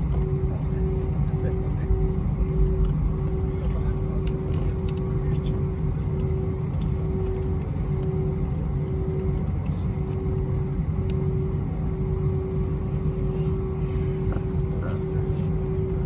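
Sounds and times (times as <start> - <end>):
airplane cabin engine rumble: 0.0 - 16.0
constant droning hum: 0.0 - 16.0.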